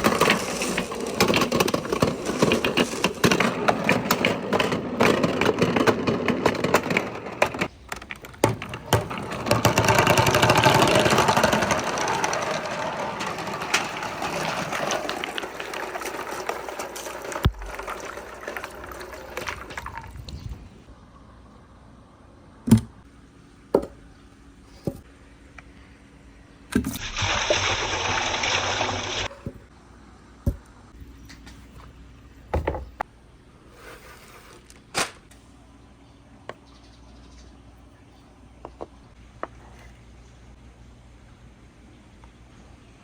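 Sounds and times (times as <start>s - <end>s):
marbles clicking on wooden run: 0.0s - 20.1s.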